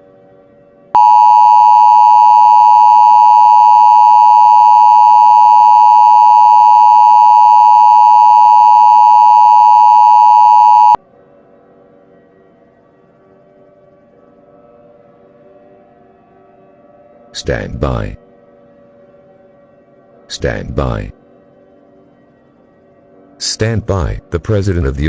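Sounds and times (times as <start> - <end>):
two-tone alert tone: 1.0 - 11.0.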